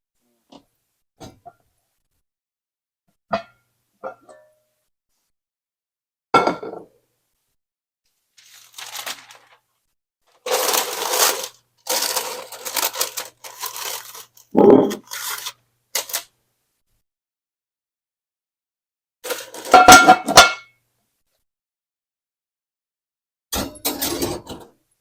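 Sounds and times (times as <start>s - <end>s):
scraping and rustling: 10.3s - 16.2s.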